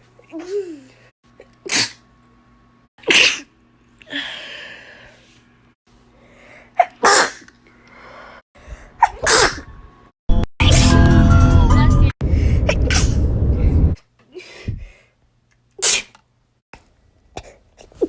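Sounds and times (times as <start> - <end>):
person sneezing: 1.7 - 2.0, 3.0 - 3.5, 6.8 - 7.5, 9.0 - 9.6, 15.8 - 16.2.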